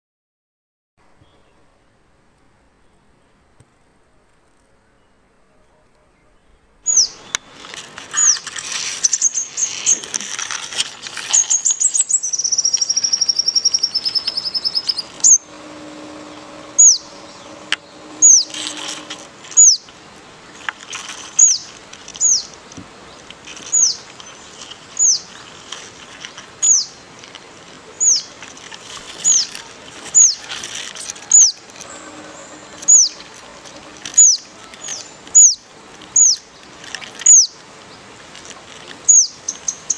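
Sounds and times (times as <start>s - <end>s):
songbirds chirping: 1.1s - 8.4s, 11.3s - 20.8s, 29.1s - 39.9s
buzzy bird trill: 11.4s - 19.8s, 30.1s - 35.6s.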